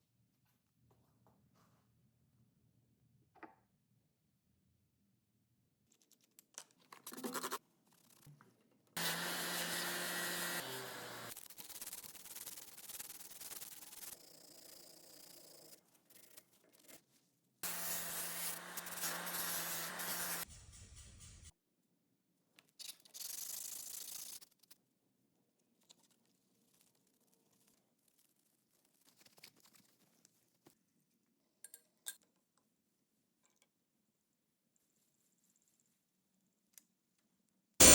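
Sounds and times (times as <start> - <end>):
rubbing and sanding metal: 9.4 - 15.4, 17.6 - 21.5.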